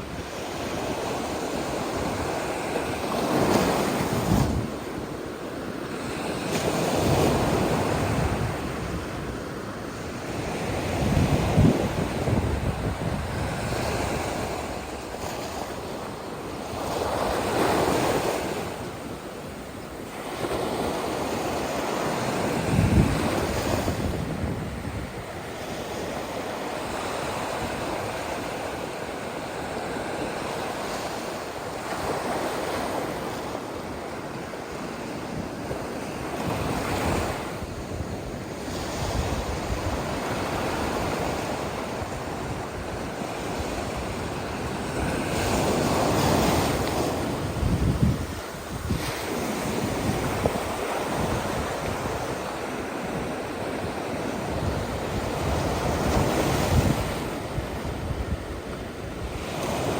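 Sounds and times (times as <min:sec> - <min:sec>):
wind buffeting microphone: 0:00.0 - 0:05.2, 0:06.0 - 0:16.0, 0:20.4 - 0:28.9, 0:34.7 - 0:59.9
ocean waves breaking: 0:00.0 - 0:59.9.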